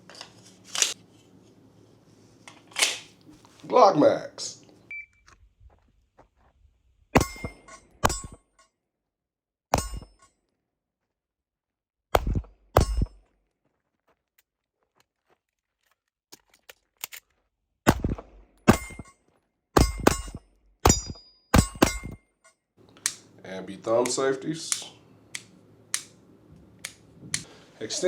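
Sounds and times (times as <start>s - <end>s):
metallic pistol clacks: 24.7s - 26.2s, 26.8s - 27.5s.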